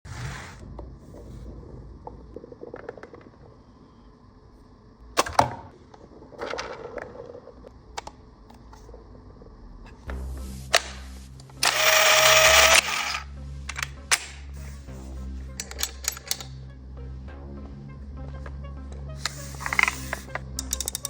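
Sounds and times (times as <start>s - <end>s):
toy blaster plastic clicks: 11.6s - 13.2s.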